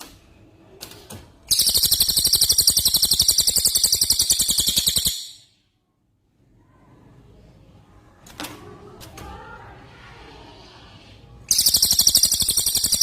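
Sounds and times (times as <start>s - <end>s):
songbird rattling trill: 1.5s - 5.5s, 11.5s - 13.0s.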